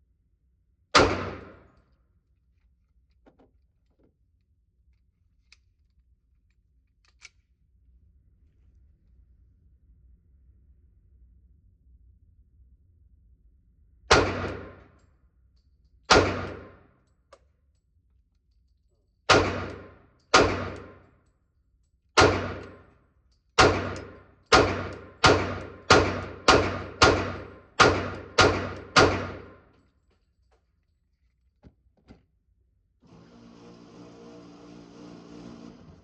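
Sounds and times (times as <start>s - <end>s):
gunshots with echo: 1.0s - 1.6s, 14.1s - 14.8s, 16.1s - 16.8s, 19.3s - 21.0s, 22.2s - 22.8s, 23.6s - 29.7s.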